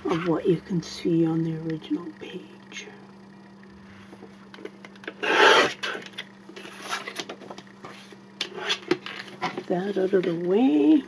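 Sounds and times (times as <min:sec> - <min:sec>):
paper cutting stroke: 0:05.1 - 0:07.2
paper scraping and rustling: 0:05.1 - 0:09.7.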